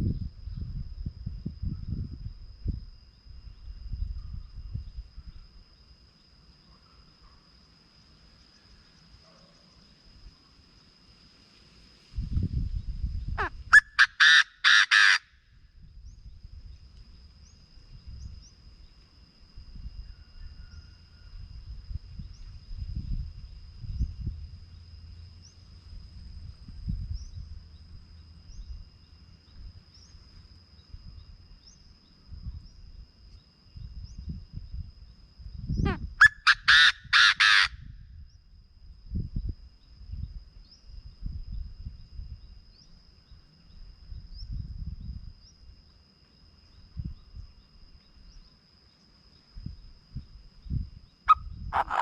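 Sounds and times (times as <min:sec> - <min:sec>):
faint high whine: 0:00.0 - 0:14.6, 0:15.2 - 0:36.2, 0:37.8 - 0:51.8
bird call with harsh notes: 0:13.4 - 0:15.3, 0:35.9 - 0:37.8, 0:51.3 - 0:52.0.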